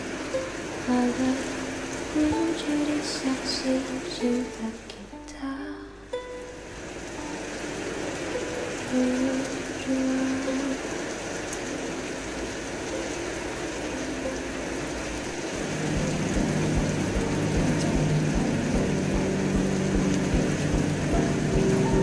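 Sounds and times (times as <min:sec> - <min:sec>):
steady rain: 0:00.0 - 0:22.0
low sustained tones: 0:15.6 - 0:22.0.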